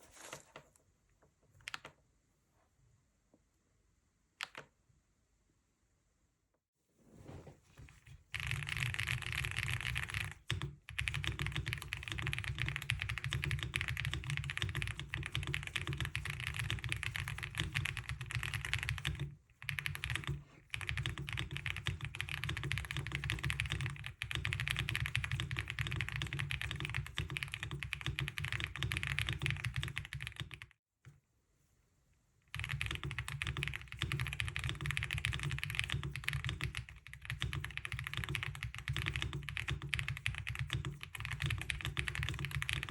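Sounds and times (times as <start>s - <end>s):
mechanical keyboard typing: 8.3s - 30.7s, 32.5s - 42.9s.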